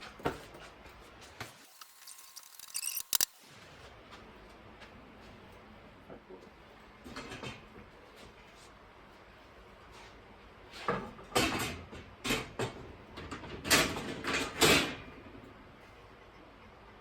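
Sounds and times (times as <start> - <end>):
metal parts scraping: 1.6 - 3.3.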